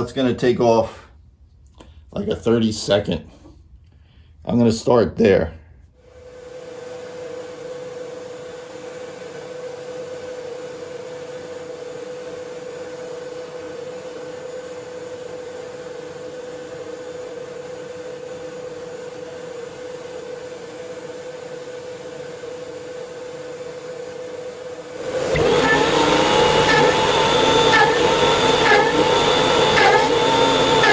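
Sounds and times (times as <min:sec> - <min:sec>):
electric motor humming: 0:23.5 - 0:30.9.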